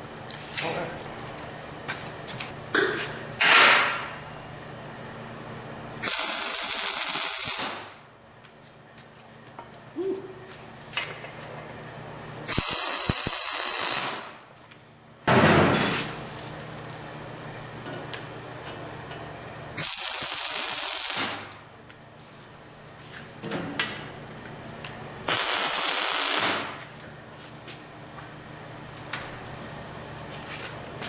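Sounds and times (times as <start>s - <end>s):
welder crackling: 6.0s - 7.9s, 12.5s - 14.5s, 19.8s - 21.6s, 25.3s - 26.8s.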